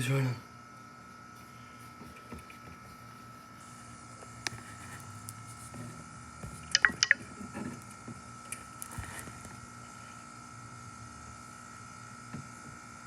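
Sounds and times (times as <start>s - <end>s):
air conditioner hum: 0.0s - 13.0s
sharp clicks: 6.8s - 7.2s
thin high tone: 6.8s - 7.2s.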